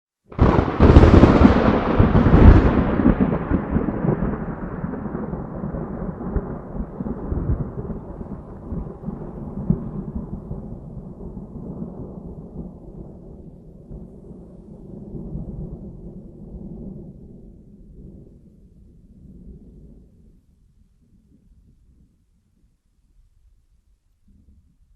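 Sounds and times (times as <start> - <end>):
thunder clap and rumble: 0.3 - 20.2.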